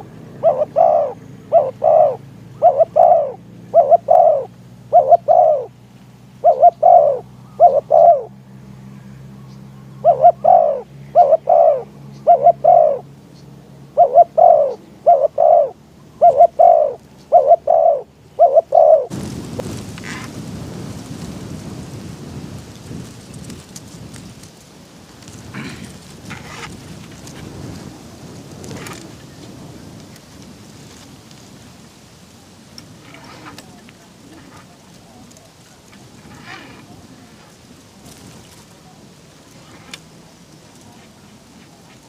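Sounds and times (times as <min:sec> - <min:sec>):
dove cooing: 0:00.0 - 0:08.4, 0:10.0 - 0:13.1, 0:13.8 - 0:19.7, 0:25.3 - 0:26.7.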